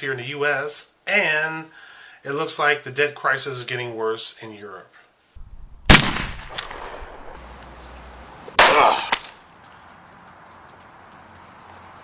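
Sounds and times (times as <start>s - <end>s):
rifle bolt click: 5.9s - 6.8s
rifle shot with echo: 5.9s - 7.4s.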